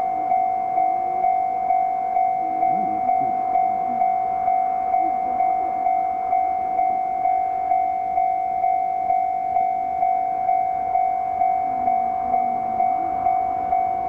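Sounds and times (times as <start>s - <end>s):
level crossing alarm dinging: 0.0s - 14.0s.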